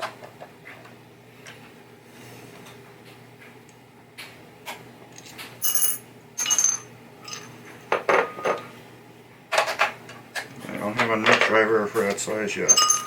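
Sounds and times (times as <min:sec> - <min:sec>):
metal hardware clinking: 0:12.7 - 0:13.0.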